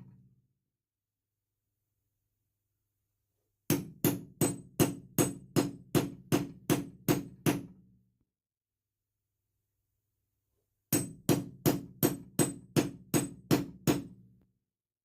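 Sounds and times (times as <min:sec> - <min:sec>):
hammer striking hole punch: 0:03.7 - 0:07.8, 0:10.9 - 0:14.2.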